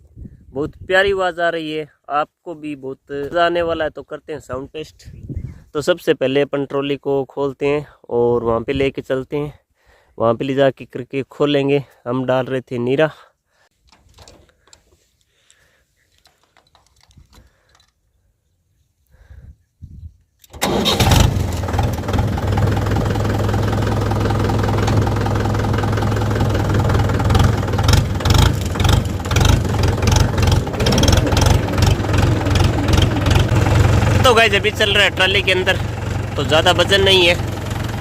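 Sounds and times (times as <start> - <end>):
tractor diesel engine running: 20.5 - 38.0.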